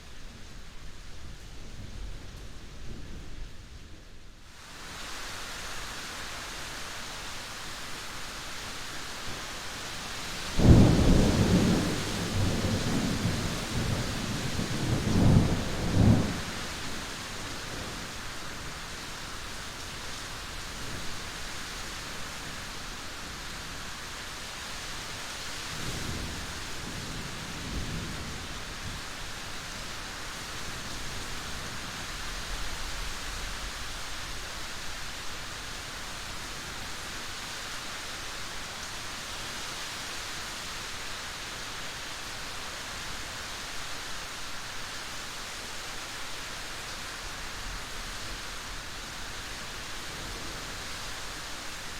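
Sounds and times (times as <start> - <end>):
steady rain: 0.0 - 51.9
thunder rumbling: 10.6 - 16.7.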